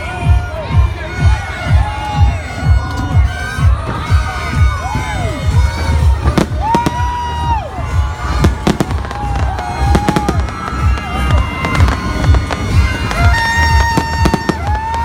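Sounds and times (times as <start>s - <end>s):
aerial fireworks bursting: 5.7s - 15.0s.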